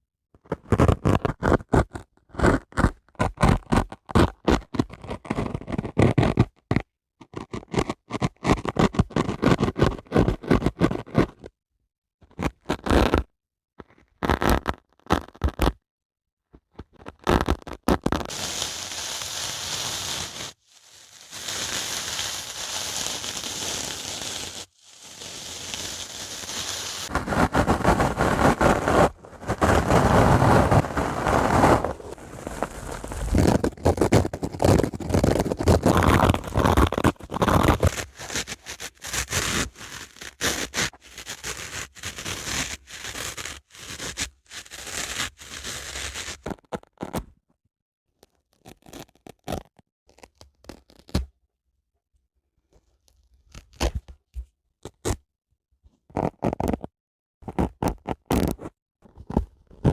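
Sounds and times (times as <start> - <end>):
dry sponge scraping: 18.2 - 46.4.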